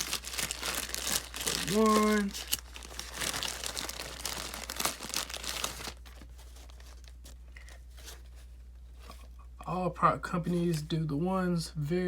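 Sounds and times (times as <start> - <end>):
packaging crinkling and tearing: 0.0 - 8.2.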